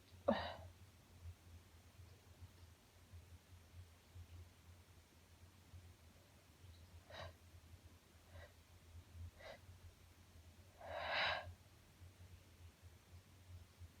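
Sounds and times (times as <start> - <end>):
woman breathing: 7.1 - 7.4, 9.4 - 9.7, 10.8 - 11.6.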